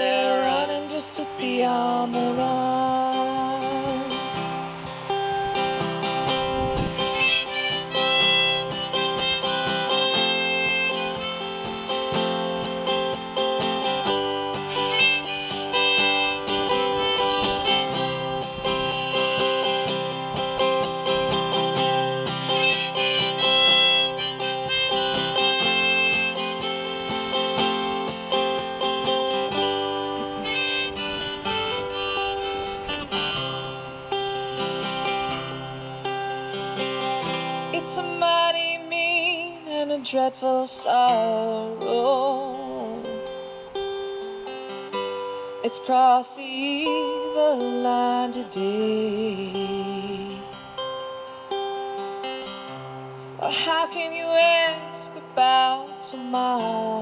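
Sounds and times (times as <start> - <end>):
harmonica melody: 0.0 - 39.8, 41.0 - 45.7
acoustic guitar: 0.0 - 57.0.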